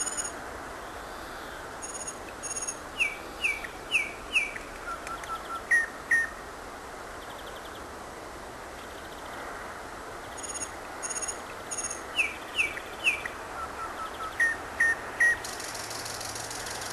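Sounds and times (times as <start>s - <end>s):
nightingale singing: 0.0s - 0.4s, 1.1s - 6.4s, 10.2s - 16.9s
steady hiss: 0.0s - 13.6s, 14.6s - 16.9s.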